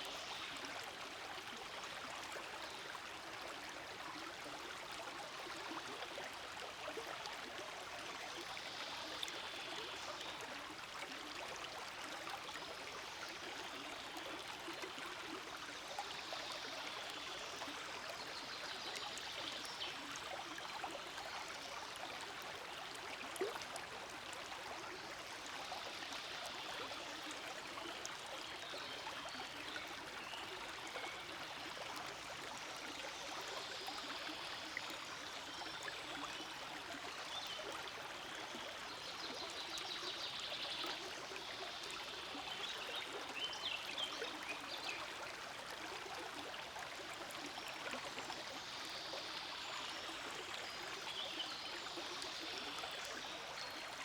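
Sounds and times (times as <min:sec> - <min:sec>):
stream water rushing and babbling: 0:00.0 - 0:54.0.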